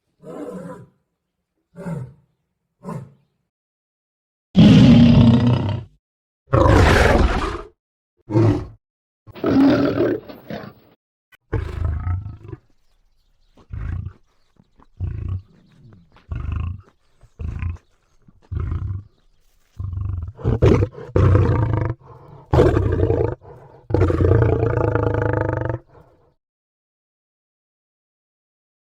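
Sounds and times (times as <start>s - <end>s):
monster roaring and growling: 4.6s - 5.9s, 6.5s - 7.7s.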